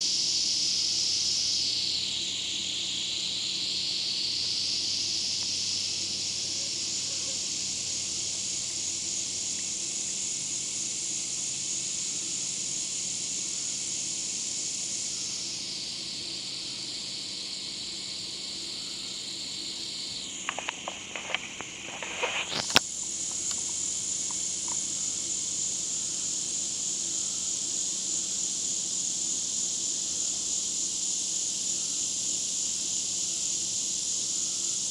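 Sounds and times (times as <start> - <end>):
high-pitched insect drone: 0.0 - 34.9
quick clicks: 20.4 - 23.7.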